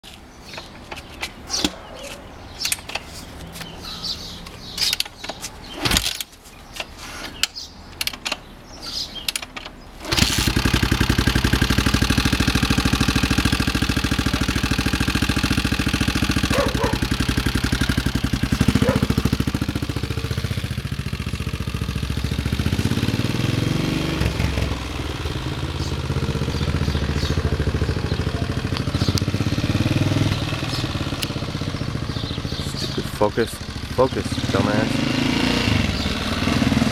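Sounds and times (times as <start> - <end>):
motorcycle engine idling: 10.1 - 36.9.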